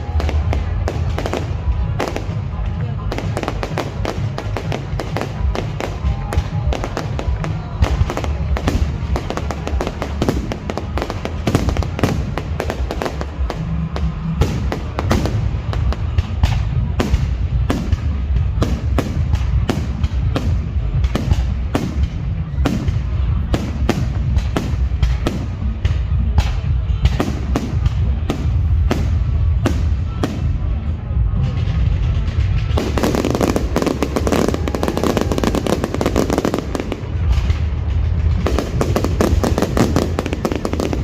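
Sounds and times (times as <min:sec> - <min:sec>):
fireworks cracks and bangs: 0:00.0 - 0:41.0
low rumble: 0:00.0 - 0:41.0.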